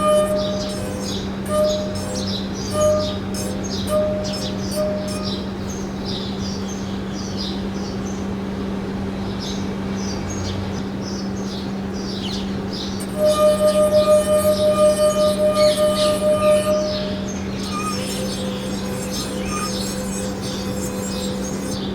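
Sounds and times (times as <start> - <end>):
singing glass pulsing tone: 0.0 - 6.3, 13.0 - 21.9
birds chirping: 0.0 - 8.2, 9.4 - 21.9
steady low hum: 0.0 - 21.9.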